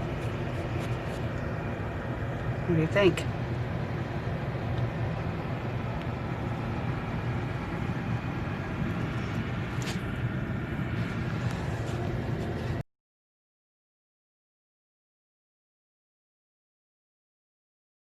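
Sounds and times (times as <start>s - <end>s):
vehicle engine idling: 0.0s - 12.8s.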